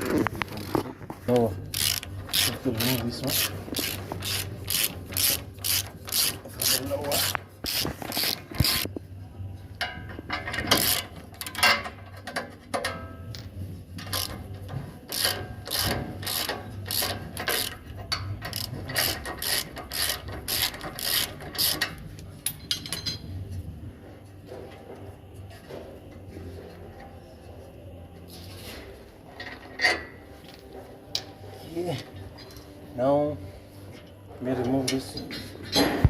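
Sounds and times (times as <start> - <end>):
socket ratchet clicking: 1.7 - 8.9.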